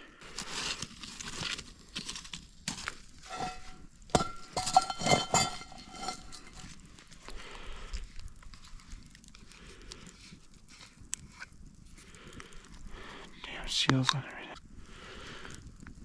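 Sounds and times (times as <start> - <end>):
camp gear rustling and knocking: 0.4 - 6.8.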